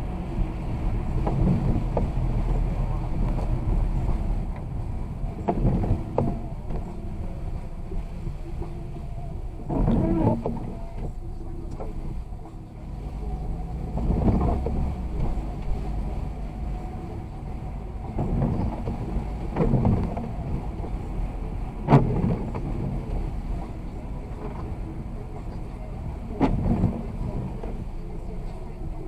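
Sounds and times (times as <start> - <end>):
car engine and tyres rumbling: 0.0 - 29.0.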